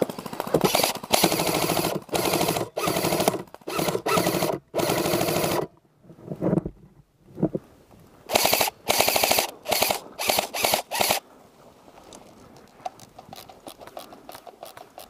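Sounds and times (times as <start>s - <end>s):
airsoft rifles firing bursts: 0.0s - 5.7s, 8.3s - 11.2s.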